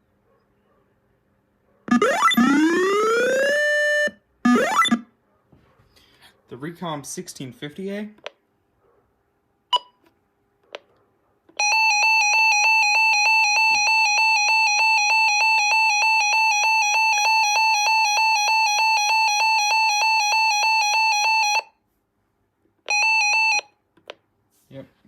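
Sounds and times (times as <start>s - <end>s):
shrill pulsing electronic alarm: 1.9s - 5.1s, 11.6s - 21.7s.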